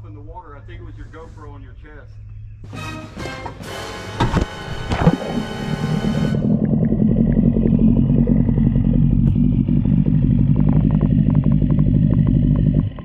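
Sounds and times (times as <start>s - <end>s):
outboard motor running: 3.6s - 13.0s.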